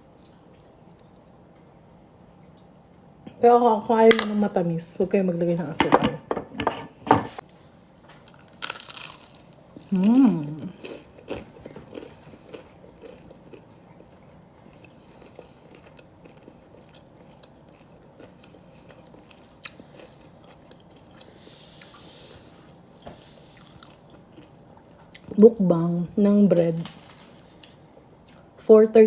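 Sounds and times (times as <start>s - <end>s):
person chewing crusty bread: 7.4s - 25.4s, 26.9s - 28.5s
person humming: 9.9s - 10.7s.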